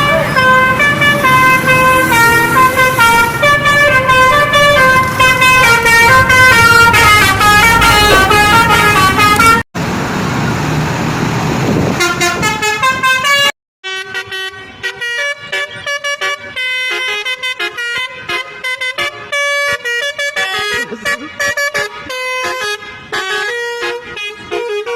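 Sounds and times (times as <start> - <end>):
bus horn playing a tune: 0.0 - 9.6, 11.9 - 24.9
rushing engine noise: 0.0 - 16.8
traffic noise: 0.0 - 24.9.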